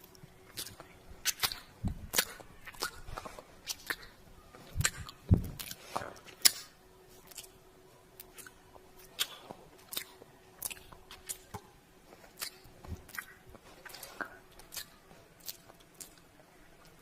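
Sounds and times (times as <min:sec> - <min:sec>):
wet lip smacks and kisses: 0:08.2 - 0:11.4.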